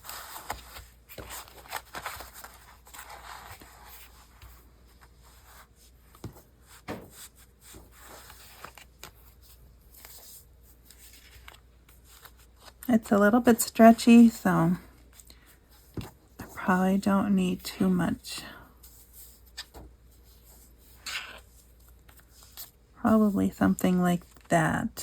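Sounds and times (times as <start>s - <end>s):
paper rustling and scraping: 0.0s - 13.1s, 18.8s - 22.8s.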